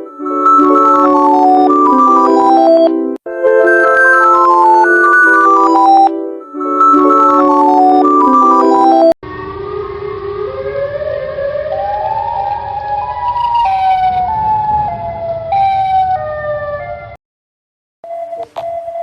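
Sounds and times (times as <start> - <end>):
electronic siren alarm tone: 0.0 - 17.2
low rumbling noise: 9.2 - 17.2.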